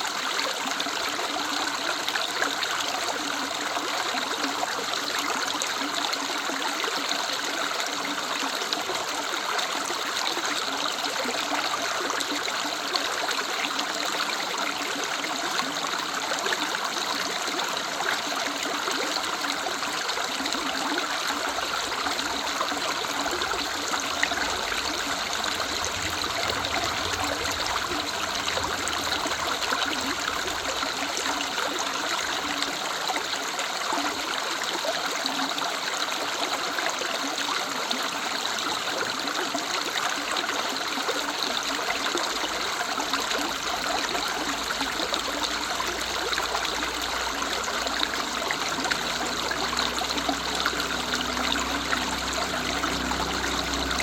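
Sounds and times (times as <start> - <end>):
river water rushing: 9.8 - 35.2, 39.5 - 54.0
low rumble: 21.5 - 31.8.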